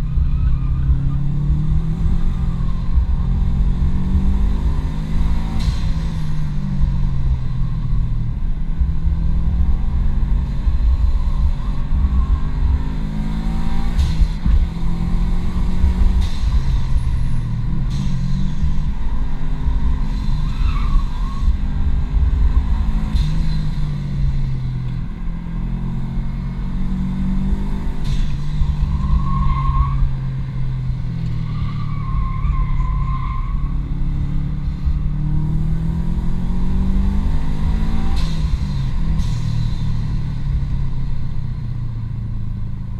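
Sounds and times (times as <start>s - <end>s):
tires squealing: 0.0s - 8.4s, 10.2s - 24.6s, 27.1s - 41.1s
car engine revving hard: 33.7s - 39.2s.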